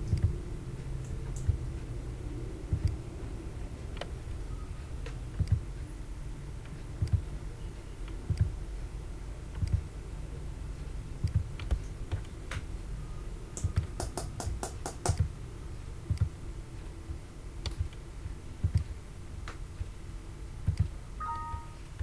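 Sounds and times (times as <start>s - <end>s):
dull low thuds: 16.1s - 16.4s.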